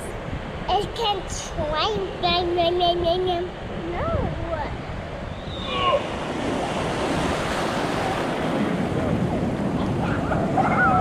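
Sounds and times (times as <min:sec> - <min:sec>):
ocean surf washing: 0:00.0 - 0:11.0
wind on microphone: 0:00.0 - 0:11.0
child's voice: 0:00.7 - 0:04.8.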